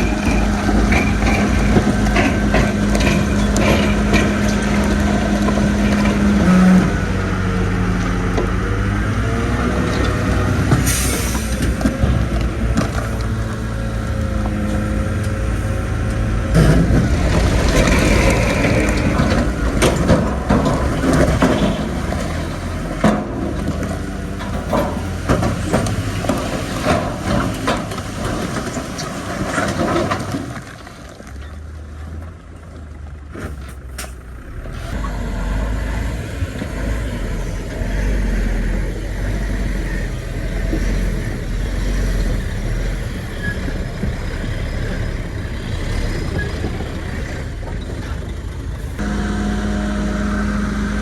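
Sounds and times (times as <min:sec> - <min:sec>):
metal clanks and knocks: 0:00.0 - 0:07.1, 0:16.0 - 0:30.7
heavy machinery engine rumble: 0:00.0 - 0:51.0.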